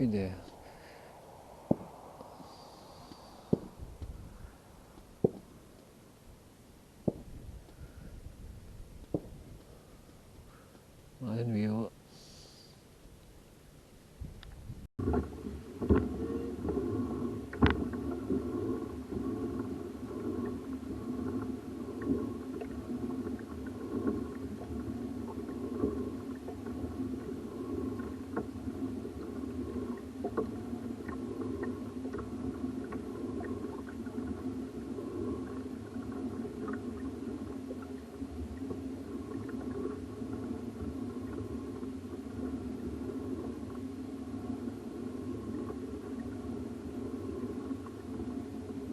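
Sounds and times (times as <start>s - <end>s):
low hum: 0.0s - 48.9s
water noise: 0.0s - 48.9s
sharp knocks: 7.0s - 7.4s.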